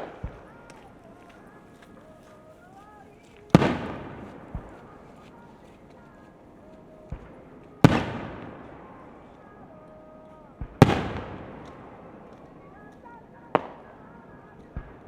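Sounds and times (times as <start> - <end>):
fireworks bangs: 0.0 - 15.0
rumbling echo: 3.5 - 6.1, 10.4 - 15.0.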